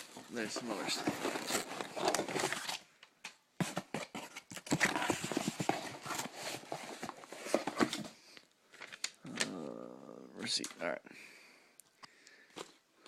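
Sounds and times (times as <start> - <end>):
rummaging in cardboard box: 0.0 - 2.8, 3.6 - 8.2.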